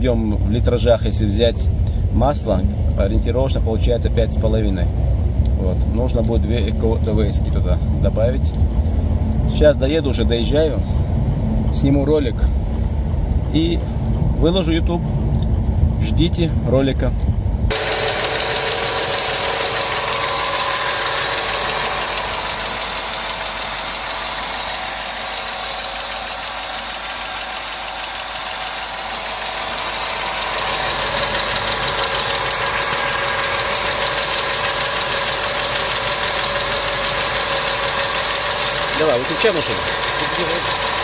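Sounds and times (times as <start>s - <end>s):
car engine running: 17.2s - 41.0s
rapid metallic lifter ticking: 17.7s - 41.0s.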